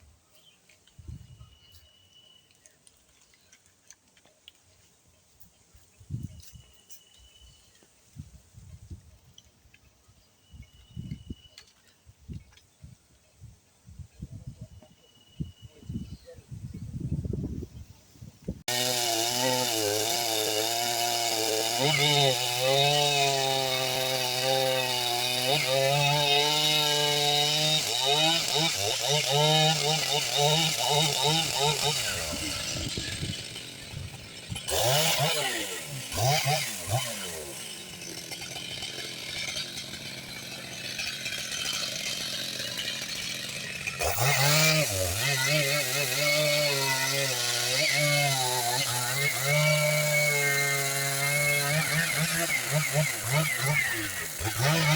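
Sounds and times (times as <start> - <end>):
chainsaw cutting at high revs: 18.6 - 54.9.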